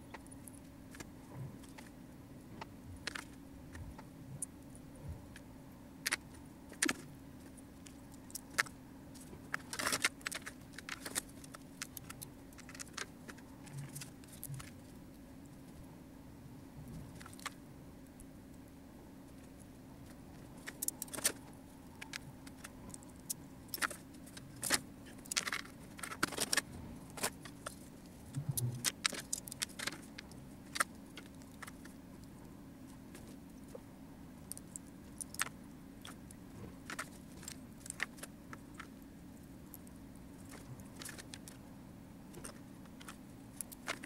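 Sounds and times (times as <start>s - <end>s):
faint steady hum: 0.0s - 44.0s
plastic parts clicking and rattling: 3.0s - 3.8s, 6.0s - 14.8s, 16.9s - 17.6s, 19.3s - 31.9s, 34.5s - 39.0s, 39.7s - 41.6s, 42.3s - 44.0s.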